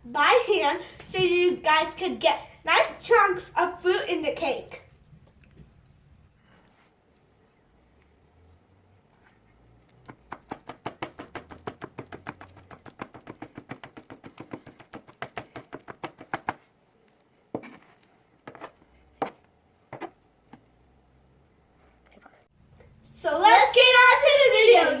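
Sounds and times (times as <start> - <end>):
knife chopping on cutting board: 10.1 - 16.6.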